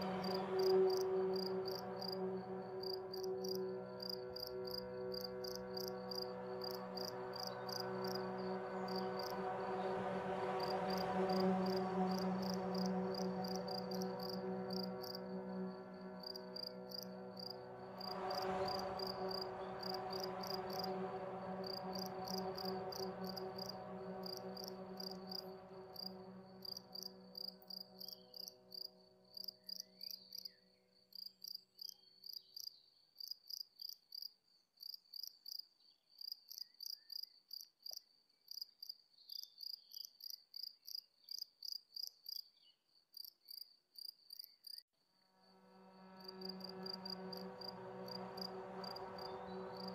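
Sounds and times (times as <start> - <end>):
soft musical drone: 0.0 - 30.9, 45.3 - 49.9
crickets chirping: 0.0 - 31.6, 45.4 - 49.9.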